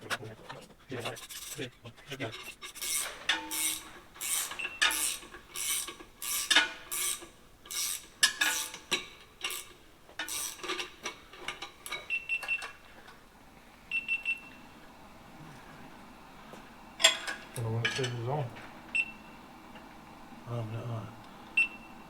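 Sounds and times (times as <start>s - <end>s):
scraping strokes on metal: 1.0s - 12.0s.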